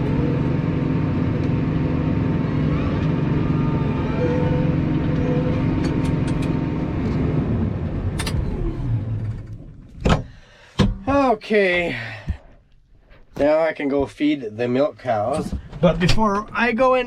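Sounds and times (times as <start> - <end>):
engine running and winding down: 0.0 - 9.7.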